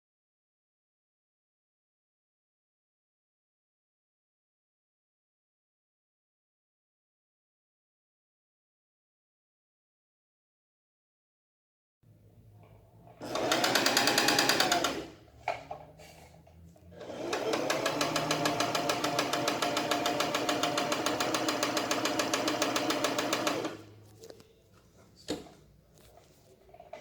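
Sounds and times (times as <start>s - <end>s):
sewing machine clicks: 13.2s - 15.1s, 17.0s - 23.8s
sewing machine running: 13.2s - 15.2s, 17.0s - 24.0s.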